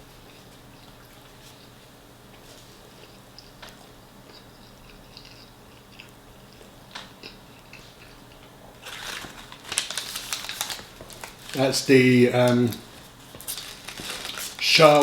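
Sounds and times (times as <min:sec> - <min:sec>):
close chewing with mouth clicks: 0:00.2 - 0:08.6
wrapper rustling: 0:08.8 - 0:15.0.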